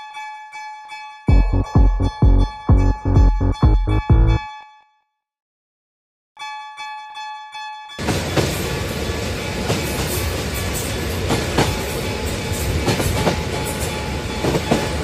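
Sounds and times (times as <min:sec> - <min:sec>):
level-crossing warning bell: 0:00.0 - 0:05.0, 0:06.4 - 0:15.0
train passing rushing: 0:08.0 - 0:15.0
train wheel clacks: 0:08.0 - 0:15.0.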